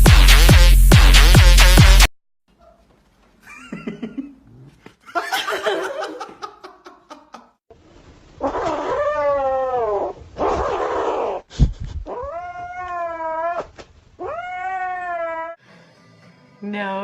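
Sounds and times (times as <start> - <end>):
cats yowling: 8.4 - 11.4, 12.1 - 15.6.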